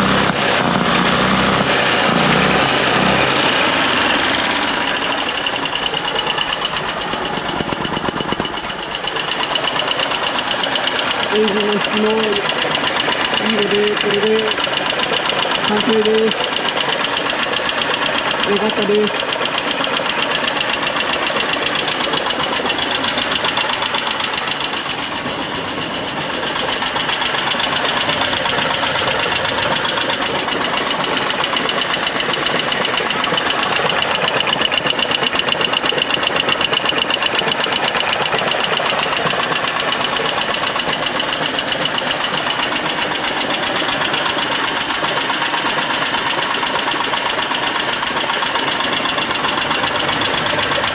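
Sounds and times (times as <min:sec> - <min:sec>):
truck engine running: 0:00.0 - 0:50.9.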